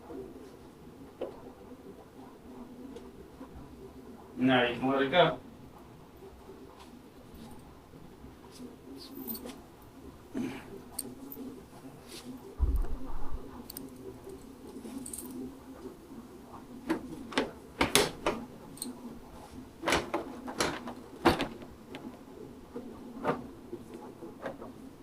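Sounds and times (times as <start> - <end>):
low thump: 12.6 - 13.3.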